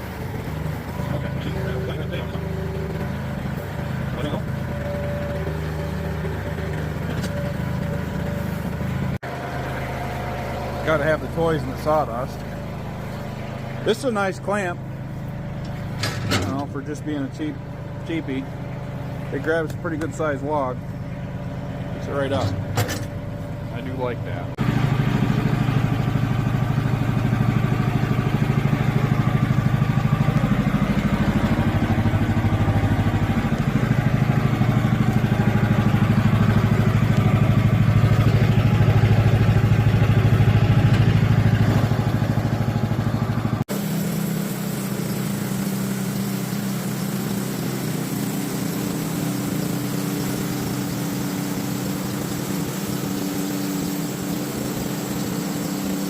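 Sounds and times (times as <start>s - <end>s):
sawmill machine drone: 0.0s - 56.0s
quieter steady machine sound: 42.2s - 56.0s.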